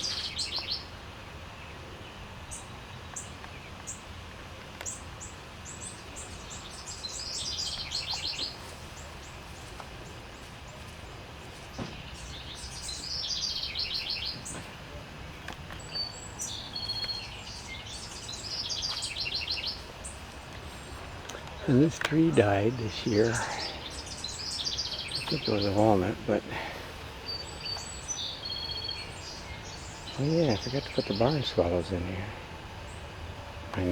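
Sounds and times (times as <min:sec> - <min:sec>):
bird chirps: 0:00.0 - 0:00.9, 0:04.8 - 0:09.8, 0:11.6 - 0:15.0, 0:15.7 - 0:33.9
songbird trilling song: 0:00.0 - 0:04.1, 0:04.7 - 0:10.5, 0:11.6 - 0:15.0, 0:15.6 - 0:33.9.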